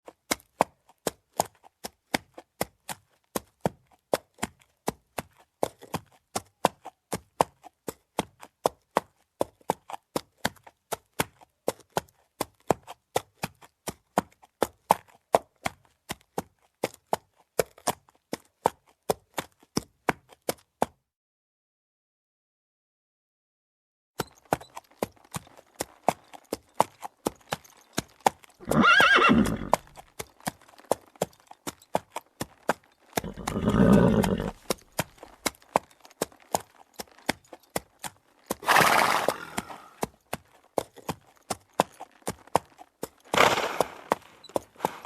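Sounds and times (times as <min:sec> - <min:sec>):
saddle creaking: 0:24.2 - 0:45.0.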